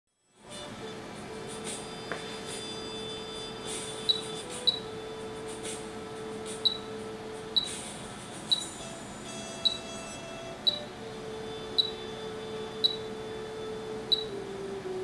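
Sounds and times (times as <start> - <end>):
steady mid-pitched tone: 1.2 - 15.0
short high beeps: 4.0 - 4.8, 6.6 - 6.9, 9.6 - 10.0, 11.7 - 12.0, 12.8 - 13.1, 14.1 - 14.3.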